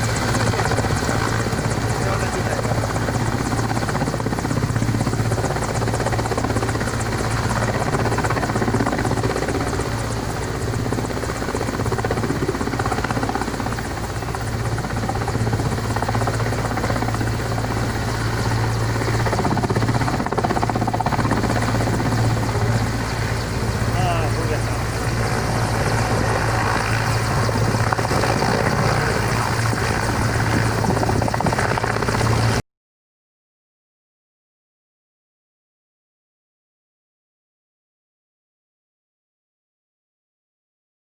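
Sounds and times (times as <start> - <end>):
helicopter rotor and engine: 0.0 - 32.6.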